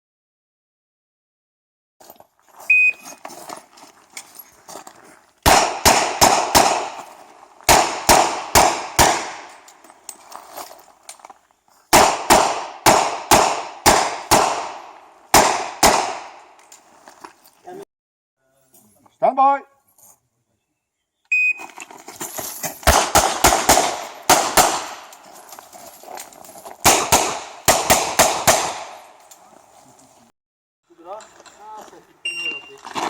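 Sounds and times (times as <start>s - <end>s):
revolver gunshots: 5.5s - 7.0s, 7.7s - 9.5s, 12.0s - 16.4s, 22.8s - 25.1s, 26.8s - 29.2s
shot timer beep: 32.3s - 32.7s.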